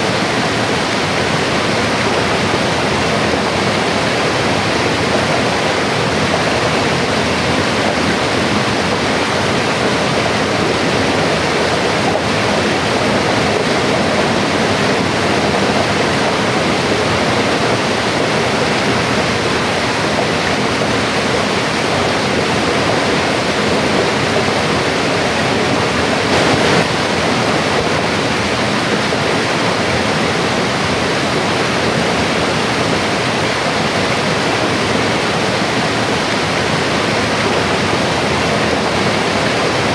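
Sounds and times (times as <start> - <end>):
river rushing over rocks: 0.0 - 39.9.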